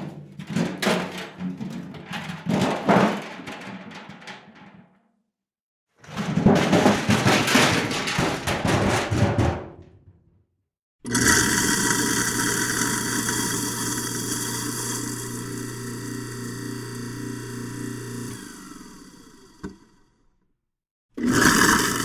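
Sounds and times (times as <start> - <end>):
garbage bin clattering: 0.0 - 4.9, 6.0 - 10.2
mechanical hum with pulsing: 11.3 - 20.0.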